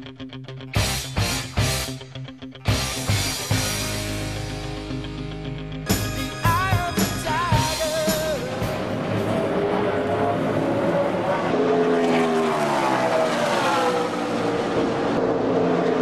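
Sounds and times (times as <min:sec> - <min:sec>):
race truck engines passing: 0:07.2 - 0:16.0.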